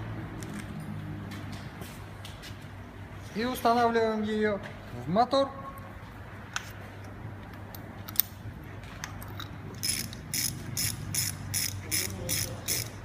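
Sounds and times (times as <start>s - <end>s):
ratchet wrench clicking: 9.2s - 13.0s.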